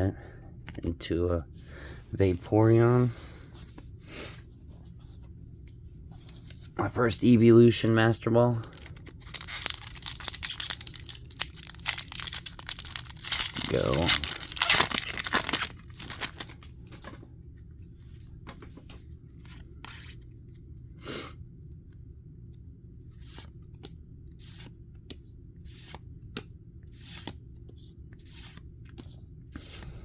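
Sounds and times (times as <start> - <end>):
foil pack ripping open: 8.6 - 16.6
cards flicking and rustling: 8.6 - 17.2, 23.2 - 30.0.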